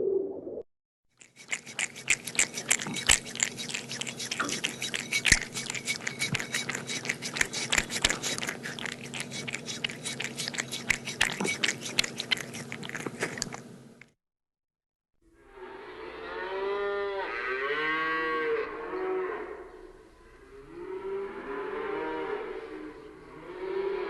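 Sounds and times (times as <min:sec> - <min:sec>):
animal chewing with crunching: 0:01.2 - 0:14.1.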